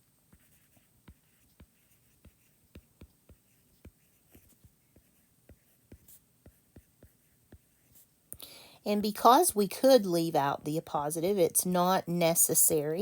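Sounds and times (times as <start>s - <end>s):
faint pen writing taps: 0.3s - 8.1s.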